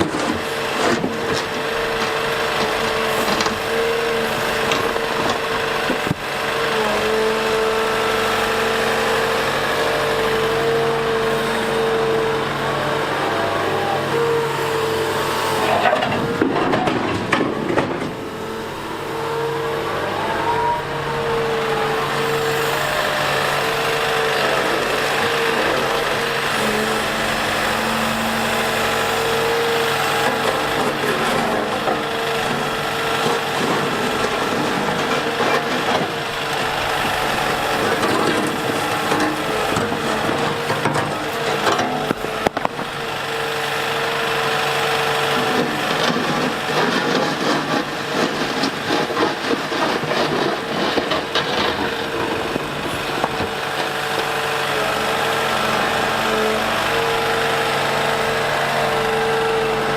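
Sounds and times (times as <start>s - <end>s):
excavator diesel engine running: 0.0s - 59.9s
constant whine: 45.4s - 59.0s.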